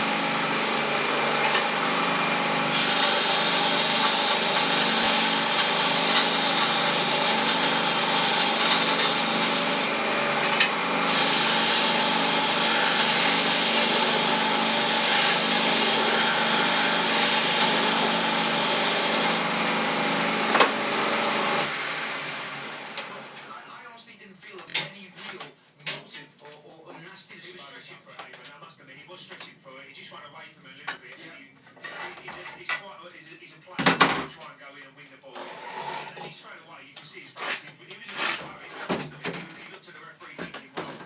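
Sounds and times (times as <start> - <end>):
belt grinder motor hum: 0.0 - 23.5
harsh hiss of grinding: 2.6 - 19.8.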